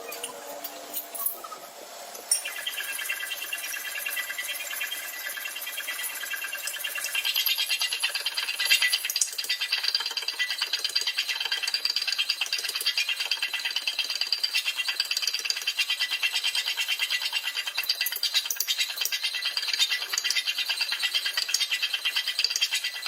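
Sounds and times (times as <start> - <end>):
fast clicking rattle: 6.1 - 15.8.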